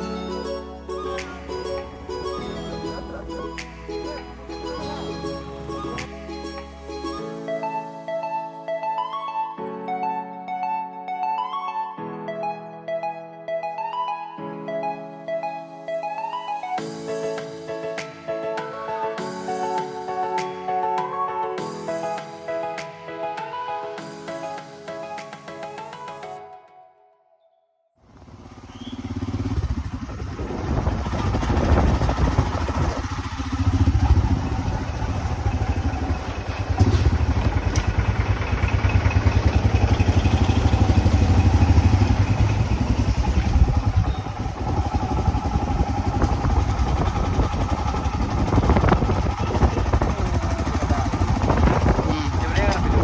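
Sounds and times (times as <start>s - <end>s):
motorcycle engine rumble: 28.1s - 53.0s.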